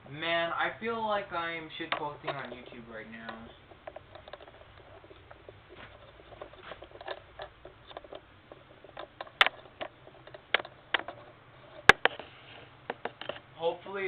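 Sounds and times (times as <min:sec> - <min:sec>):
tripod clicks and taps: 0:11.8 - 0:12.2.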